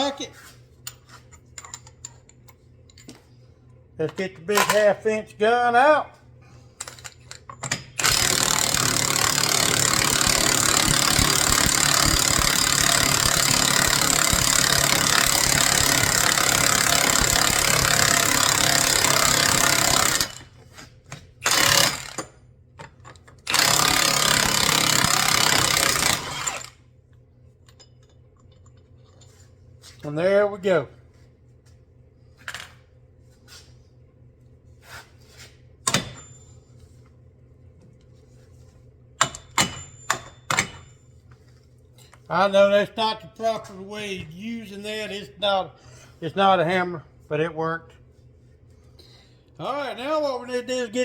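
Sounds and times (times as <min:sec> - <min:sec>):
impact wrench hammering: 0:07.6 - 0:22.4, 0:23.5 - 0:26.8, 0:39.2 - 0:40.9.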